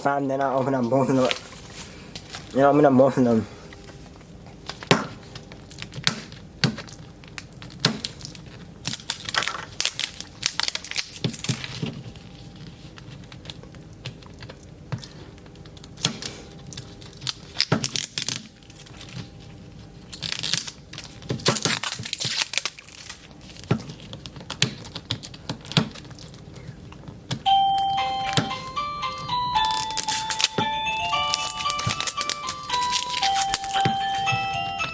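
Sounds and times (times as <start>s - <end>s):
plastic packaging crinkling: 0.8s - 3.0s, 6.8s - 14.8s, 16.6s - 27.0s, 29.6s - 34.9s
chiming background music: 27.5s - 34.9s.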